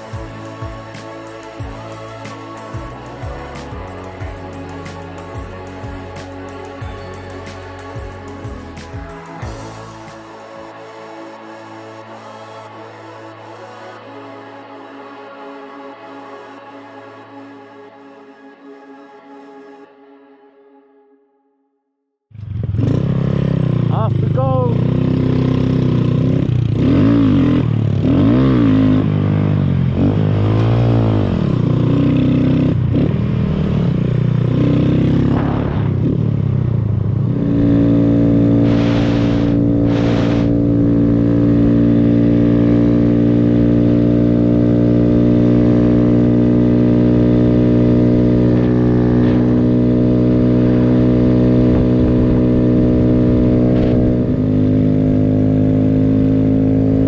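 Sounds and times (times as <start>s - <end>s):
small motorcycle engine revving: 22.4s - 57.0s.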